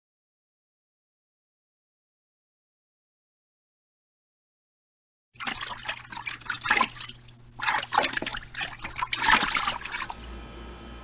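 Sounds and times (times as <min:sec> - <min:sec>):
water splashing and trickling: 0:05.4 - 0:10.3.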